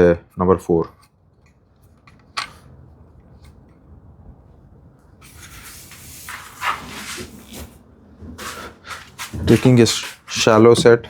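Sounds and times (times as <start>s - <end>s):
hand plane shaving wood: 5.2s - 10.6s.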